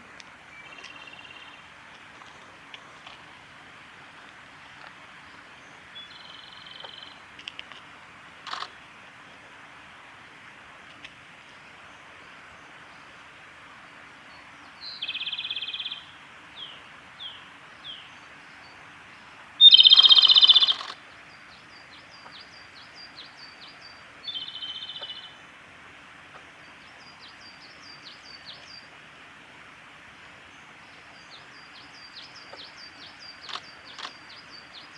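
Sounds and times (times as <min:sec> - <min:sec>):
bird singing rattling trills: 0:19.6 - 0:21.0.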